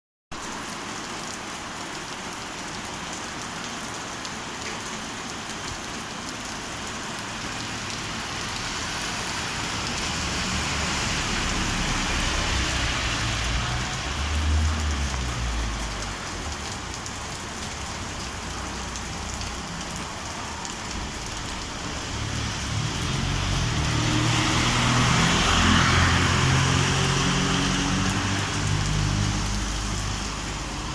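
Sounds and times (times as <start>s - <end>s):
steady rain pouring: 0.3s - 30.9s
vehicle engine passing: 21.9s - 30.9s.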